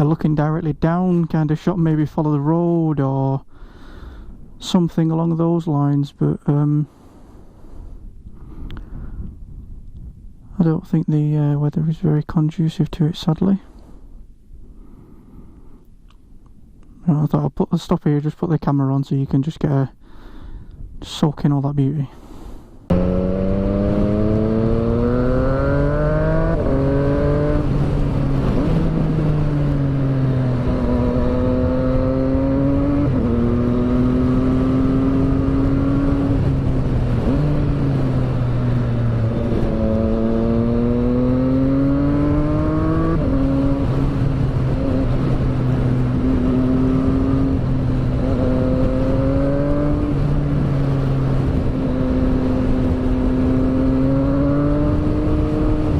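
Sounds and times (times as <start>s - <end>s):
wind and road noise: 0.0s - 55.9s
motorcycle engine revving: 22.9s - 55.9s.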